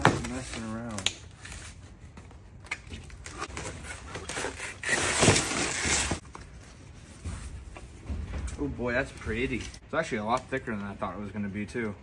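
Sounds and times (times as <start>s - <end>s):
packing material rustling and tearing: 3.0s - 6.3s.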